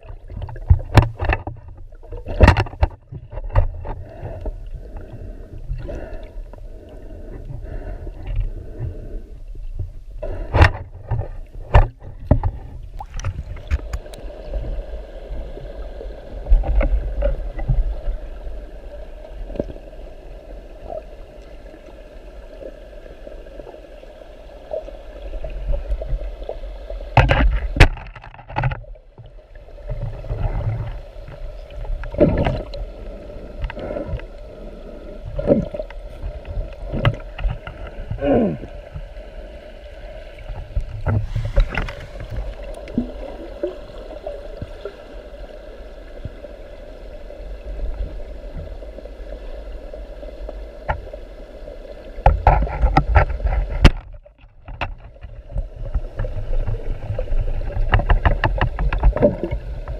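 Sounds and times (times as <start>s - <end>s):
knocks and clicks underwater: 0.0s - 6.6s, 9.7s - 14.8s, 16.4s - 18.2s, 24.8s - 34.4s, 35.2s - 39.2s, 40.3s - 44.0s, 50.5s - 51.2s, 52.2s - 59.9s
underwater water movement: 0.0s - 59.9s.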